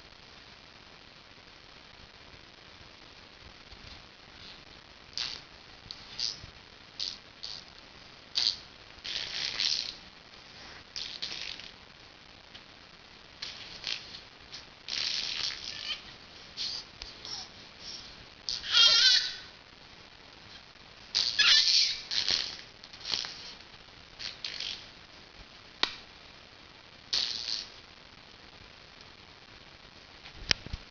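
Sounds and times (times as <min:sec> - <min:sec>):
baby squealing: 0:15.4 - 0:19.5, 0:21.2 - 0:22.5
baby spluttering mouth noises: 0:16.6 - 0:19.5.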